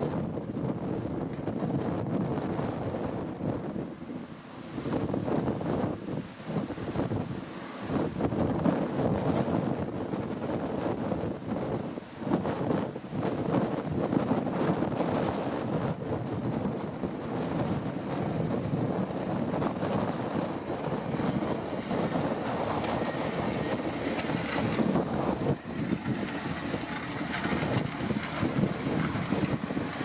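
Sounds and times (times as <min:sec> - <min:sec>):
wind buffeting microphone: 0:00.0 - 0:30.0
tractor running: 0:13.1 - 0:30.0.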